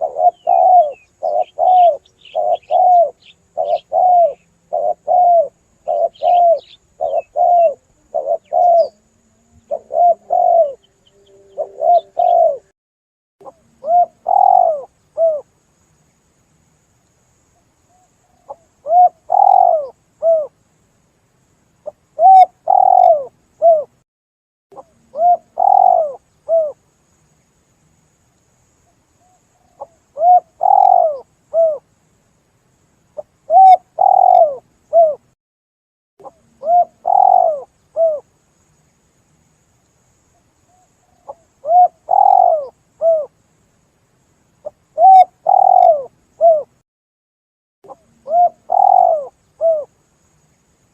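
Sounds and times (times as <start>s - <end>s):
dove cooing: 0.0s - 12.7s, 13.4s - 15.5s, 17.9s - 20.5s, 22.2s - 24.0s, 24.8s - 26.8s, 29.2s - 31.8s, 33.2s - 35.2s, 36.2s - 38.2s, 40.7s - 43.3s, 44.6s - 46.8s, 47.9s - 49.9s.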